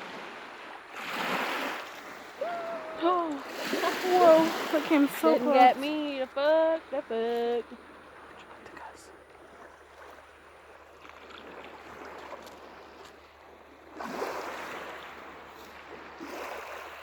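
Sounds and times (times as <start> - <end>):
waves washing onto sand: 0.0 - 9.1.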